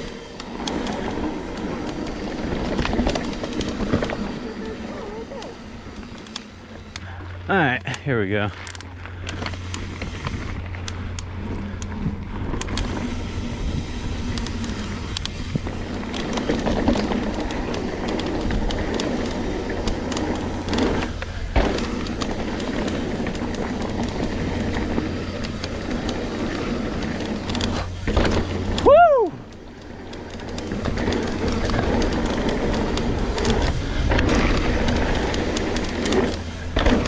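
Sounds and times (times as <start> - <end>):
bike rattling over bumps: 0.0 - 37.0
tyre and wind noise: 0.0 - 37.0.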